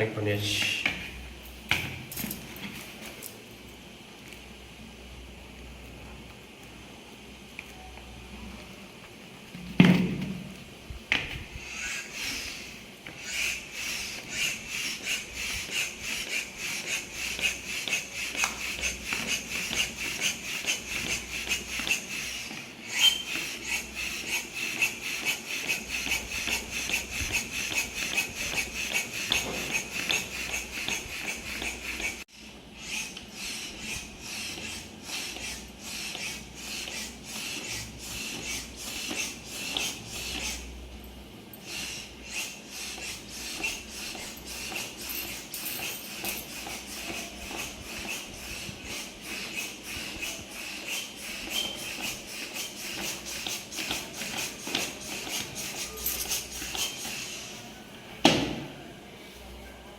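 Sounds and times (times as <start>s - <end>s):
air pump hissing: 11.1s - 40.7s, 41.6s - 57.7s.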